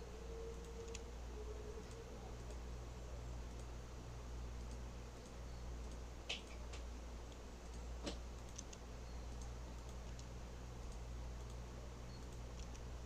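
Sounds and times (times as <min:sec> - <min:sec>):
low electrical hum: 0:00.0 - 0:13.0
computer mouse clicks: 0:00.5 - 0:01.1, 0:03.4 - 0:03.8, 0:04.6 - 0:12.9.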